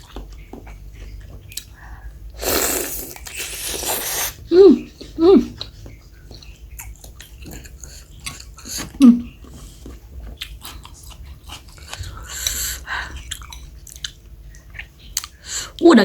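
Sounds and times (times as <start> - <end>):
wet chewing clicks and smacks: 0.0 - 1.8, 5.6 - 15.4.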